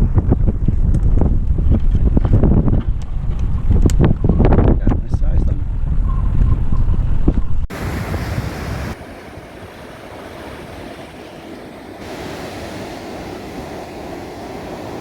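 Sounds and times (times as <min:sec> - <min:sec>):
wind noise on microphone: 0:00.0 - 0:15.0
ocean surf washing ashore: 0:07.7 - 0:15.0.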